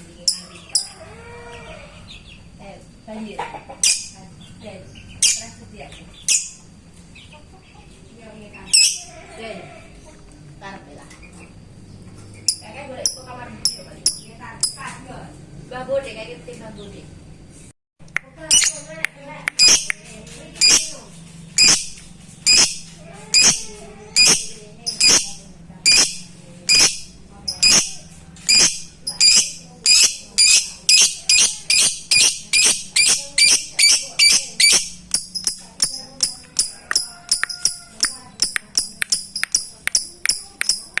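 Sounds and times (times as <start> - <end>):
lovebird sharp clicking call: 18.2 - 20.9, 21.6 - 23.6, 24.2 - 25.3, 25.9 - 27.9, 28.5 - 41.0.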